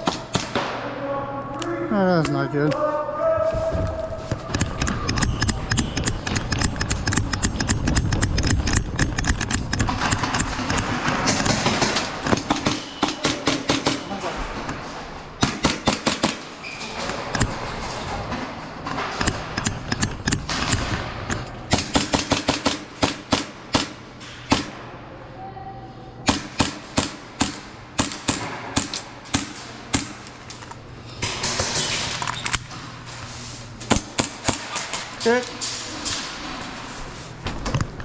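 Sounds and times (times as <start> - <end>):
airsoft guns firing: 0.0 - 1.0, 5.3 - 14.2, 15.4 - 16.6, 18.9 - 24.9, 26.2 - 30.3, 33.9 - 35.2.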